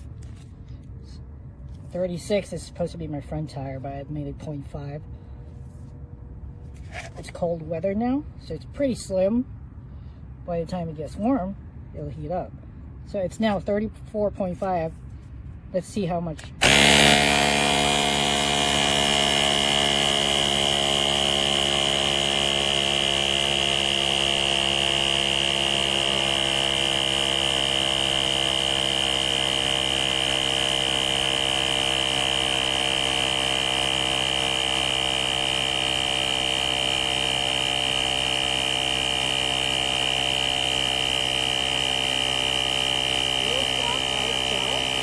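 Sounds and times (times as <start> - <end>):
tire inflator compressor whining: 0.0 - 9.1, 12.5 - 45.0.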